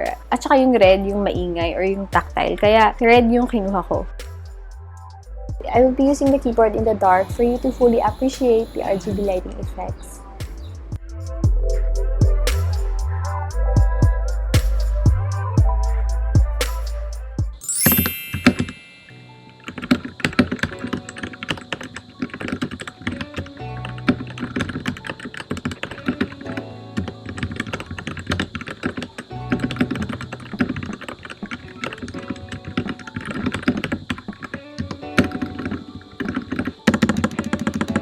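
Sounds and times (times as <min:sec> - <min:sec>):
background music: 0:00.0 - 0:38.0
mechanical keyboard typing: 0:19.6 - 0:38.0.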